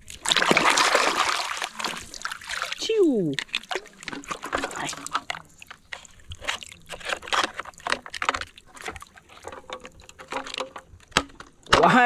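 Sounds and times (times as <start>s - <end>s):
water sloshing and splashing: 0.0s - 12.0s.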